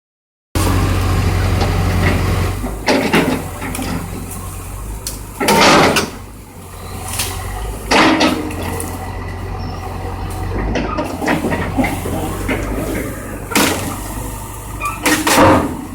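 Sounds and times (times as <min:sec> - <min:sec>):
diesel engine running: 0:00.6 - 0:15.9
debris crashing and cracking: 0:10.3 - 0:15.9.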